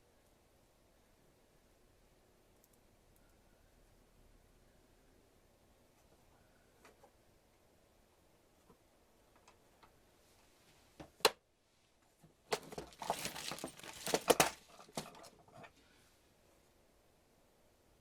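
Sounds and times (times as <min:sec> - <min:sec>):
quick clicks and rattling: 0:12.5 - 0:15.4.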